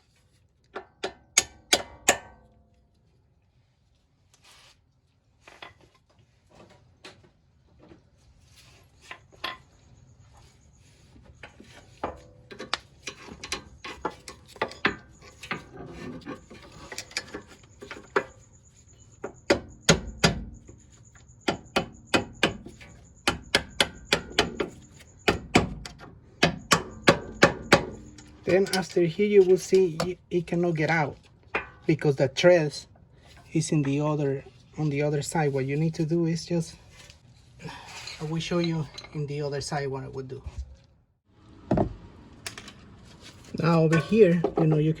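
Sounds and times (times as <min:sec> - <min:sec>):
hand tools clicking on metal: 0:21.4 - 0:30.2.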